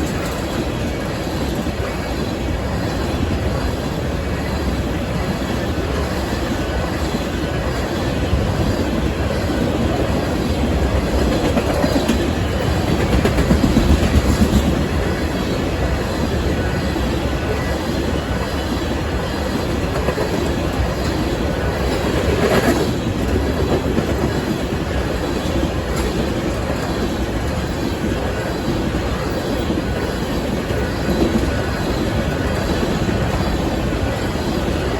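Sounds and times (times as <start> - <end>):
freight train rumbling past: 0.0 - 34.9
wheels clacking over rail joints: 9.6 - 16.3.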